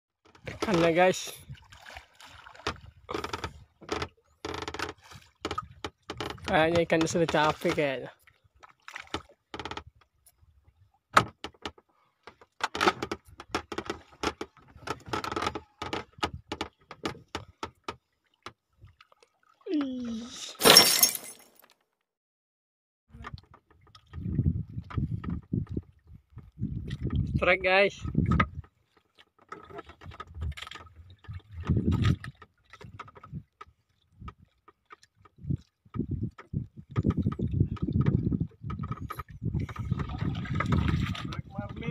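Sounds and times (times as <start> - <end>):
water and wind rumble: 0.3 - 11.8, 12.9 - 19.0, 23.1 - 41.9
fishing tackle clicking and knocking: 36.0 - 40.9.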